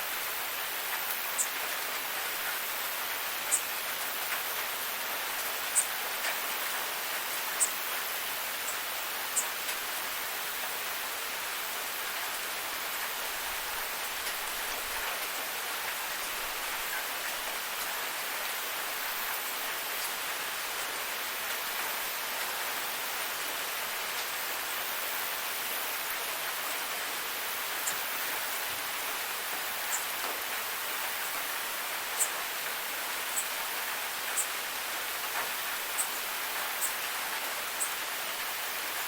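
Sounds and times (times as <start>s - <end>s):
rain hissing: 0.0s - 39.0s
insect chirping: 7.6s - 7.8s, 32.1s - 32.4s, 33.2s - 33.6s, 34.3s - 34.6s, 35.9s - 37.0s.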